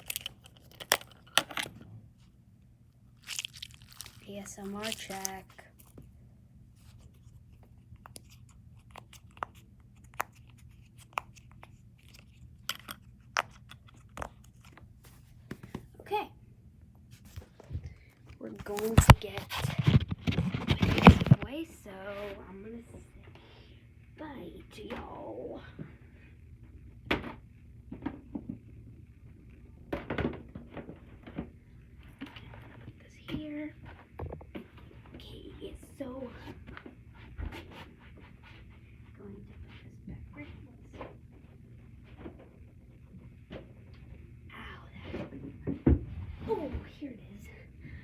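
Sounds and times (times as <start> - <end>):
fidget toys clicking and tapping: 0.0 - 1.7.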